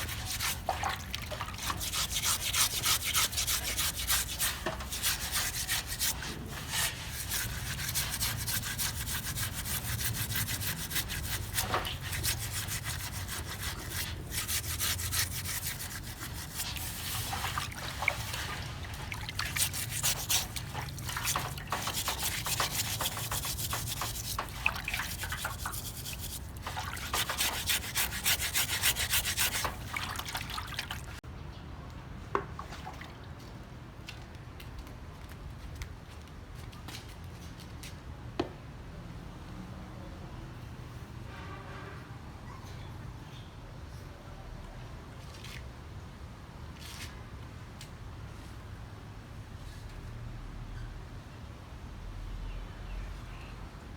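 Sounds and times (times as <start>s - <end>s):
shark skin being scraped: 0.0s - 0.8s, 1.6s - 18.7s, 19.3s - 30.6s.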